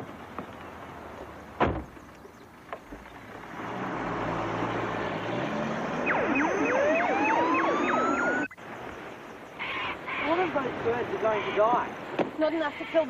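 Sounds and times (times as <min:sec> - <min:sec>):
car door shutting: 0:01.6 - 0:02.0
police siren rising: 0:04.3 - 0:08.6.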